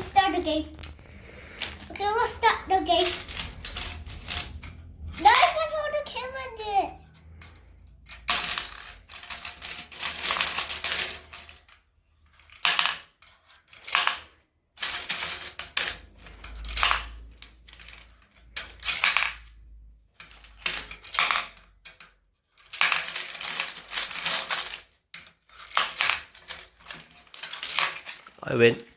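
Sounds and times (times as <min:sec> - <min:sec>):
game pieces clattering: 0:00.0 - 0:05.4, 0:08.2 - 0:11.6, 0:22.6 - 0:24.9, 0:25.6 - 0:28.7.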